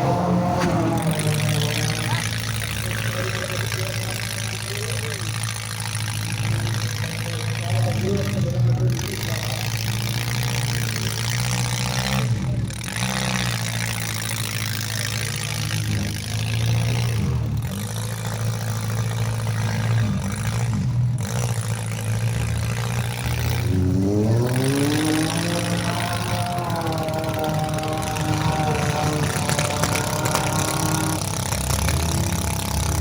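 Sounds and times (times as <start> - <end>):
car engines revving: 0.0 - 33.0.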